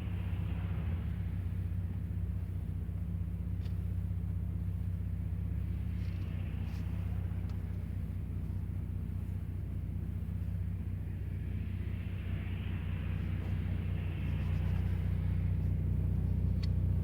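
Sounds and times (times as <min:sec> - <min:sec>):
car cabin engine and road drone: 0:00.0 - 0:17.0
faint ticks: 0:03.5 - 0:04.1, 0:14.2 - 0:17.0.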